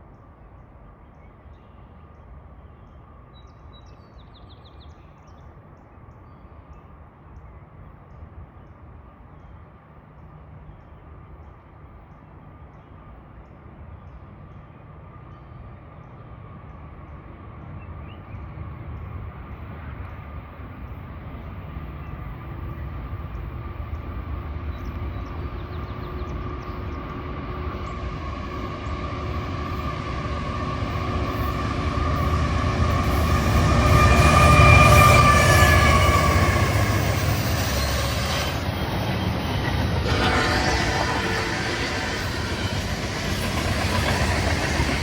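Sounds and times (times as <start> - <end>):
train approaching: 10.2 - 45.0.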